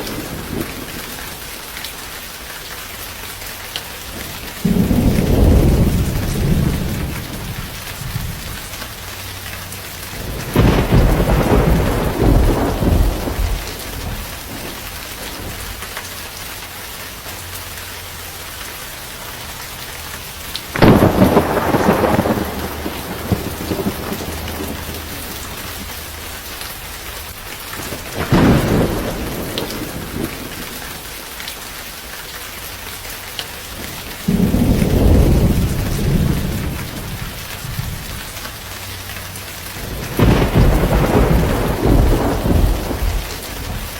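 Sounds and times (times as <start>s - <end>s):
thunder rumbling: 0.0s - 1.6s, 4.0s - 16.4s, 20.4s - 31.0s, 33.7s - 43.9s
steady rain: 0.0s - 43.9s.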